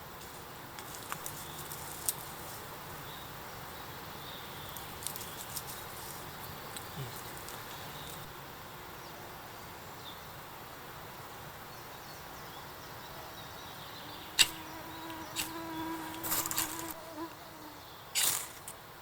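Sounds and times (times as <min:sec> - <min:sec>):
insect buzzing: 0:13.9 - 0:18.7.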